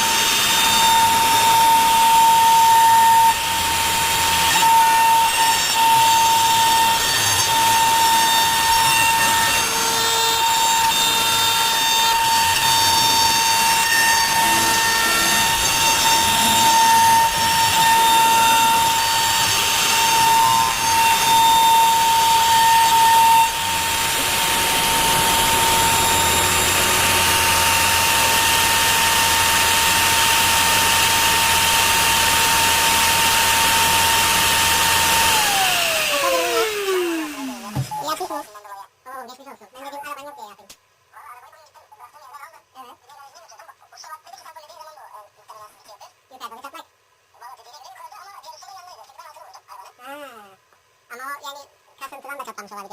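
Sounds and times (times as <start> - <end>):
cnc router spindle whine: 0.0 - 38.0
low hum: 14.3 - 34.4.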